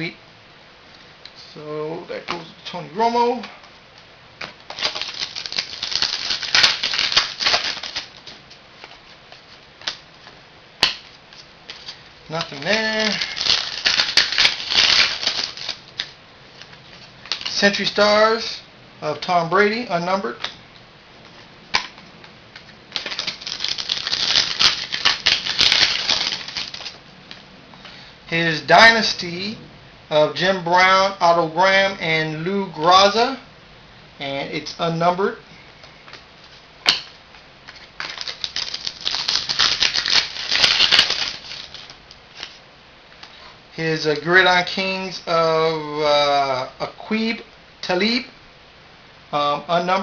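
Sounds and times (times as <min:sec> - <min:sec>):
cards and wrapper crinkling: 0:04.6 - 0:17.8, 0:22.6 - 0:27.0, 0:37.6 - 0:42.6.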